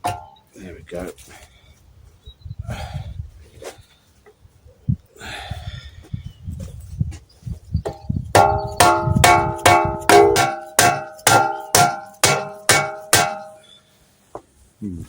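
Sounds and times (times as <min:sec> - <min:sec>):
hammer ringing on steel: 0:00.0 - 0:00.4, 0:08.4 - 0:13.6.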